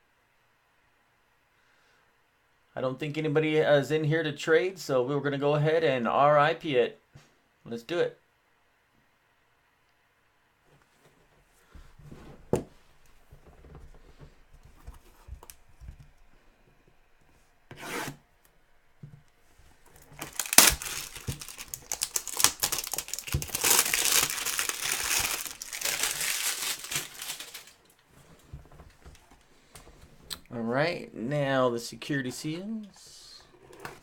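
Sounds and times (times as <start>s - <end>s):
plastic wrapping crinkling and tearing: 19.9s - 28.0s.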